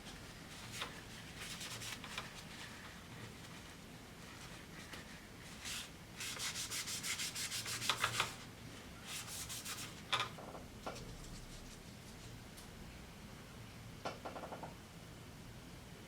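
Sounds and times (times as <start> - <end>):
brush scrubbing keyboard: 0.5 - 8.4, 9.1 - 10.0.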